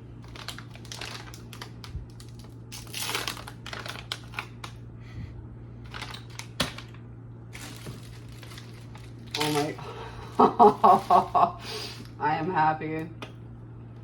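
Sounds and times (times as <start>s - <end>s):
steady low hum: 0.0s - 14.0s
packaging rustling and crinkling: 0.2s - 4.8s, 5.8s - 12.0s.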